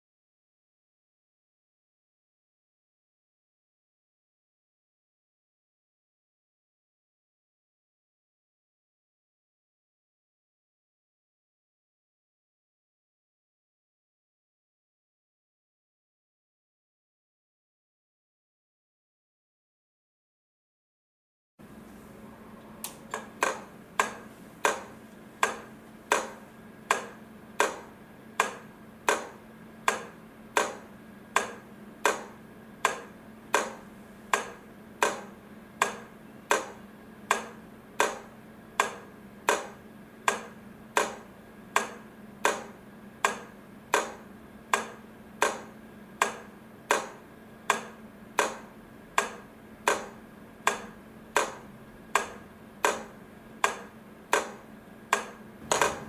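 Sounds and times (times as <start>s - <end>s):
steady low hum: 21.6s - 56.0s.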